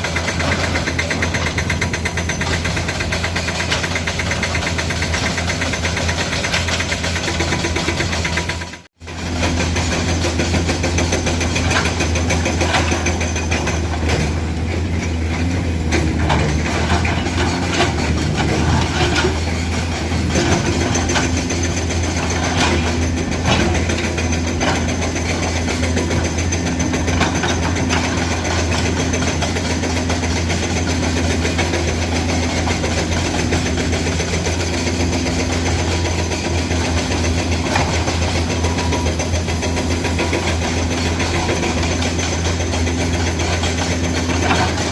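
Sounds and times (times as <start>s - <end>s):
excavator diesel engine running: 0.0s - 44.9s
metal knocks and clanks: 11.6s - 30.3s.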